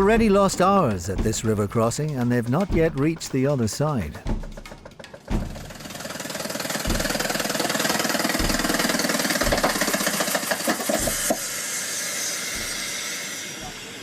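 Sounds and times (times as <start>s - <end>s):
low thuds: 0.0s - 6.1s, 6.8s - 10.2s
petrol engine chugging: 0.0s - 14.0s.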